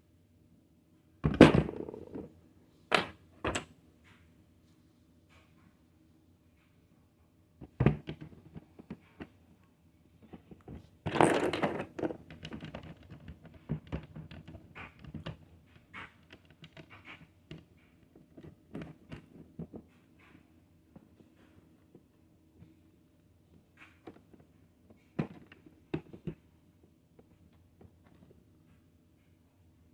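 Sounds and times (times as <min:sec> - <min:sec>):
clatter of plastic pieces: 0:01.3 - 0:02.3, 0:10.3 - 0:19.9
plastic pieces clicking and knocking: 0:11.1 - 0:17.7.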